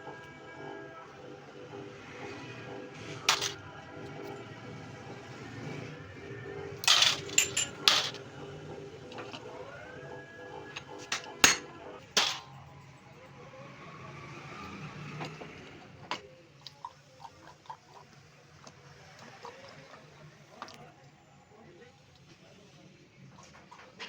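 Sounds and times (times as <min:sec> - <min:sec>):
metallic tool clinks and knocks: 0:06.8 - 0:08.2.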